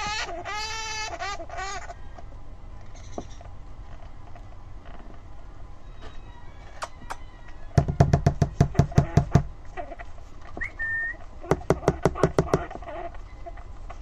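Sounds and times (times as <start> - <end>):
hamster squealing: 0.0 - 2.0, 8.7 - 10.1, 11.4 - 13.6
high whistle-like squeak: 10.6 - 11.2.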